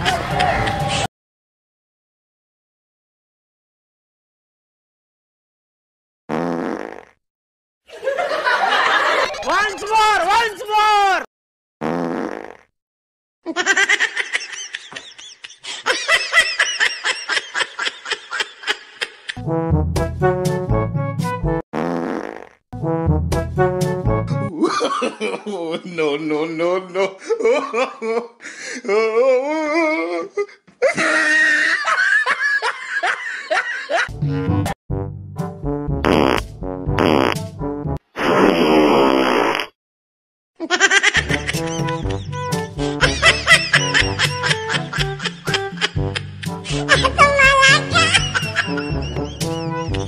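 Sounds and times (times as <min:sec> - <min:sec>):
music: 0:00.0 - 0:01.1, 0:19.4 - 0:21.6, 0:22.8 - 0:24.5, 0:34.1 - 0:38.0, 0:41.2 - 0:50.0
buzzy fart sound effect: 0:06.3 - 0:07.2, 0:11.8 - 0:12.7, 0:21.7 - 0:22.9, 0:35.8 - 0:39.8
high-pitched laughter: 0:13.5 - 0:19.4, 0:30.8 - 0:34.1, 0:40.6 - 0:50.0.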